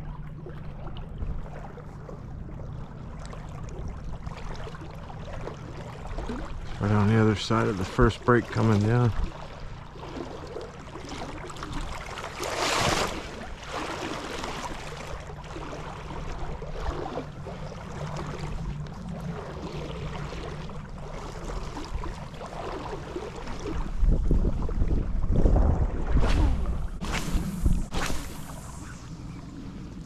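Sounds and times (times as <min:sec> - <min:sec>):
river water flowing: 0:03.2 - 0:23.9
wind buffeting microphone: 0:23.6 - 0:28.0.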